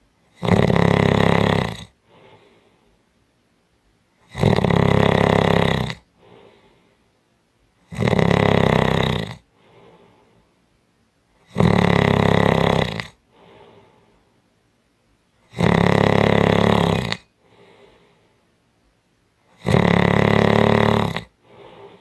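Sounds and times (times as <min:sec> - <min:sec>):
person snoring: 0:00.3 - 0:02.6, 0:04.2 - 0:06.8, 0:07.9 - 0:10.2, 0:11.4 - 0:14.1, 0:15.4 - 0:18.1, 0:19.5 - 0:22.0
faint breath: 0:02.0 - 0:03.2, 0:06.1 - 0:07.2, 0:09.5 - 0:10.6, 0:13.2 - 0:14.5, 0:17.3 - 0:18.6, 0:21.4 - 0:22.0.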